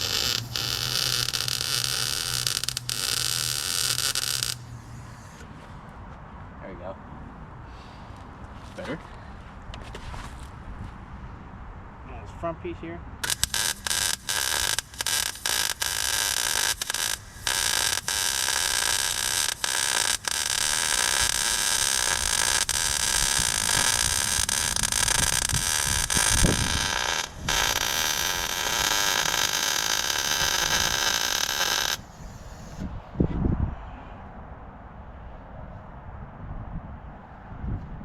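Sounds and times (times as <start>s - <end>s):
crackling hiss of welding arc: 0.0s - 5.4s, 13.2s - 32.8s.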